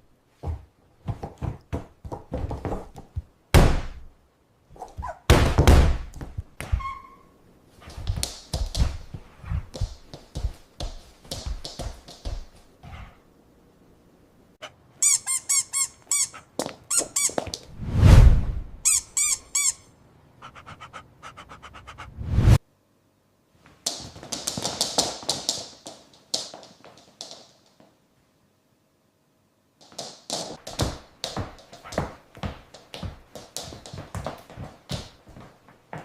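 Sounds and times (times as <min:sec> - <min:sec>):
rubber chicken toy squeaking: 0:15.0 - 0:17.4, 0:18.8 - 0:19.9.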